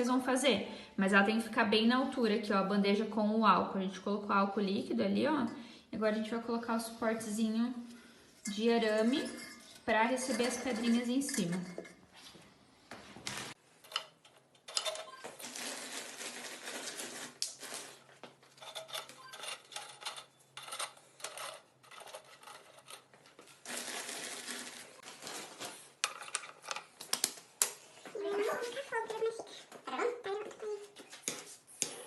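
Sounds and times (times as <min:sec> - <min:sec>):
metal clinking and scraping: 0:08.4 - 0:12.2, 0:18.6 - 0:26.8.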